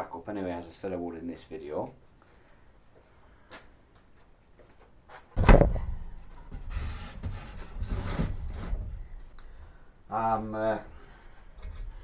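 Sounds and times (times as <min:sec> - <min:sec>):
heavy thump: 0:05.4 - 0:09.2.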